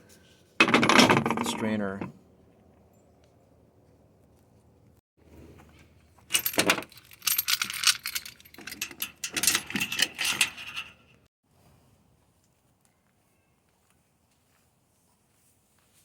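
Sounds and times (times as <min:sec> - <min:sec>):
metal hardware clinking: 0:06.3 - 0:11.2.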